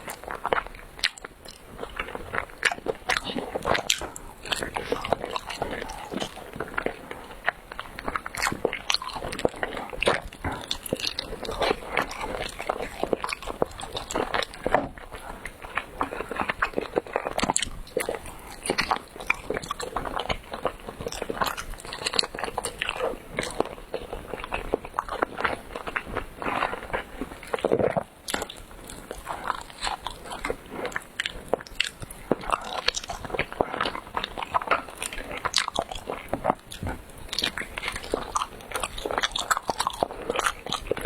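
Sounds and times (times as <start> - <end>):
chewing mouth clicks and smacks: 0.0 - 41.0.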